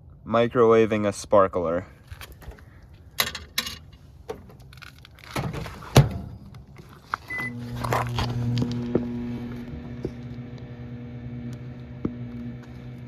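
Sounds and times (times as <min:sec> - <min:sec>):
clicks and knocks: 0:03.2 - 0:07.0
microwave door shutting: 0:05.4 - 0:10.6
microwave oven humming: 0:05.9 - 0:13.0
keypad beep: 0:07.3 - 0:07.6.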